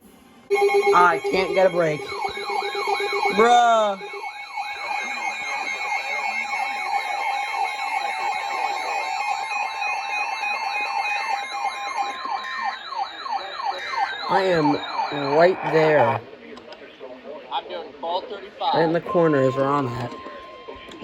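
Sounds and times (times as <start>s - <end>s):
high warbling tone: 0.5s - 16.2s
siren-like sweeps: 0.5s - 16.2s
two-tone alert signals: 0.5s - 16.2s.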